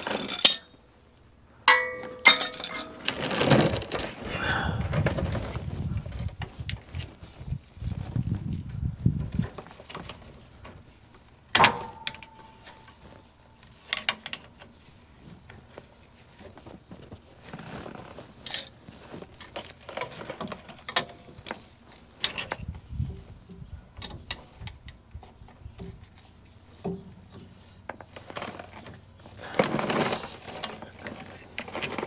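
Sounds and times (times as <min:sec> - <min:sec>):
metal tools clinking on steel: 0:00.1 - 0:00.8, 0:01.7 - 0:03.2
sharp ringing metallic strike: 0:01.7 - 0:02.6.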